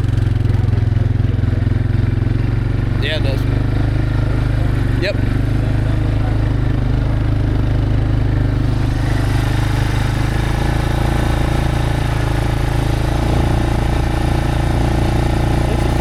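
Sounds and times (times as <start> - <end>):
vehicle engine droning: 0.0 - 16.0.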